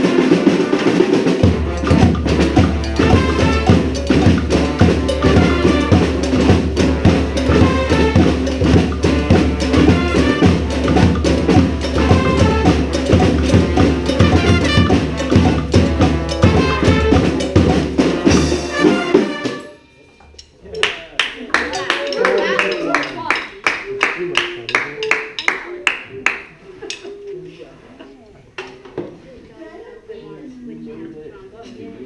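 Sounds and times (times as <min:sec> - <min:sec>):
brass band playing salsa: 0:00.0 - 0:20.0.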